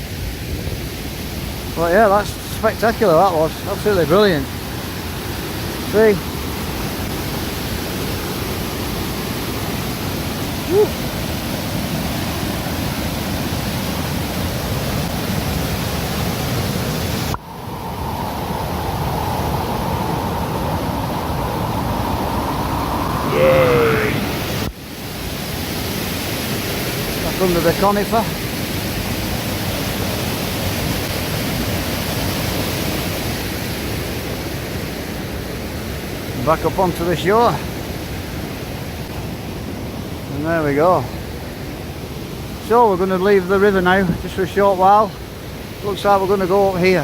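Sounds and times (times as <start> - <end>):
waterfall rushing: 0.8 - 47.0
rushing noise: 17.0 - 25.2.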